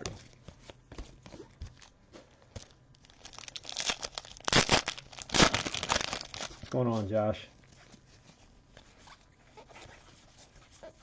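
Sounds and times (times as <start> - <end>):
foil wrapper crinkling: 2.6 - 7.0
foil wrapper tearing: 3.0 - 6.6.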